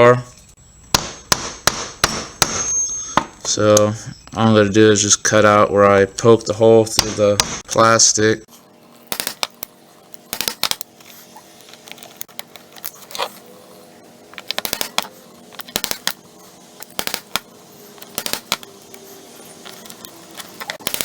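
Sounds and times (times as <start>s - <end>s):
plastic sheet clicking and snapping: 10.4s - 10.9s, 14.4s - 16.2s, 16.8s - 18.7s, 19.7s - 21.0s.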